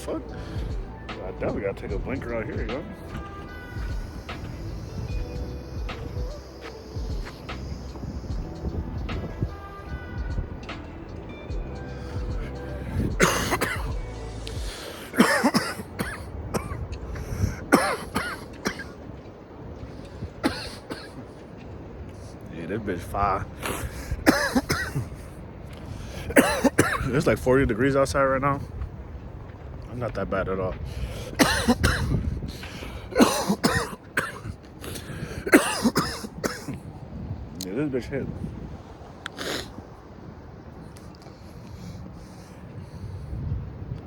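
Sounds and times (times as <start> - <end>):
man coughing: 13.0 - 14.0, 15.1 - 19.0, 20.4 - 21.2, 23.6 - 25.2, 26.3 - 27.2, 31.4 - 32.2, 33.1 - 34.6, 35.4 - 36.8.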